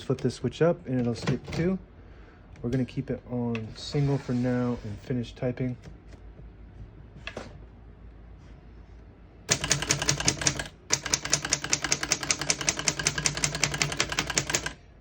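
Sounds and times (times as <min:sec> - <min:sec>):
typewriter keystrokes: 0:09.5 - 0:14.8.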